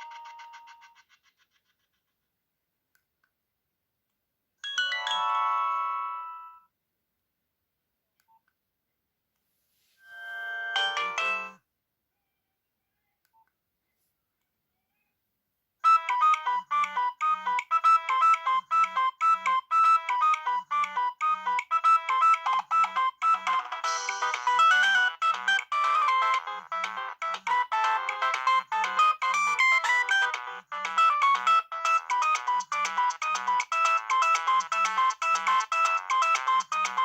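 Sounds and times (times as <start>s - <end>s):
mobile phone ringtone: 0.0s - 1.1s, 4.6s - 6.7s, 10.0s - 11.6s, 15.8s - 37.0s.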